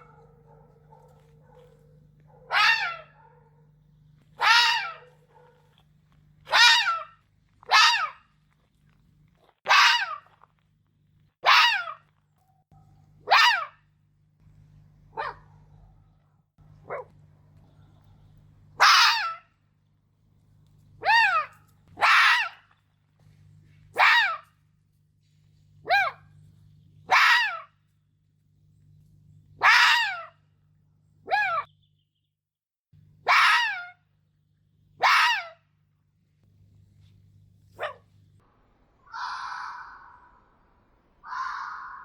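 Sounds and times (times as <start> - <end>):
fox barking: 0.0 - 5.8, 6.4 - 8.3, 9.6 - 10.4, 11.4 - 12.1, 12.7 - 13.8, 15.1 - 17.2, 18.8 - 19.6, 21.0 - 22.8, 23.9 - 24.6, 25.8 - 26.3, 27.1 - 27.8, 29.6 - 30.4, 31.2 - 31.7, 33.2 - 34.0, 35.0 - 35.6, 37.7 - 38.1.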